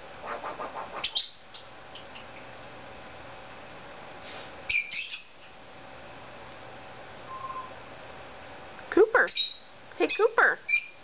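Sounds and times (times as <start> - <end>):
parrot squawking: 0.2 - 1.5, 4.7 - 5.4.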